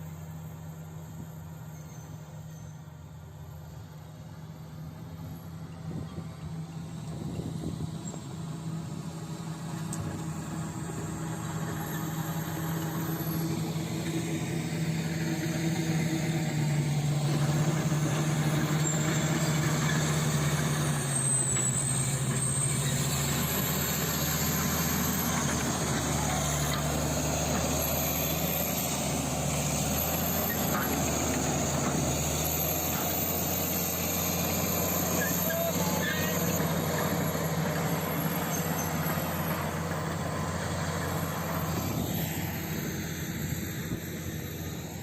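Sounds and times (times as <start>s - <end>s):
bulldozer diesel engine running: 0.0s - 45.0s.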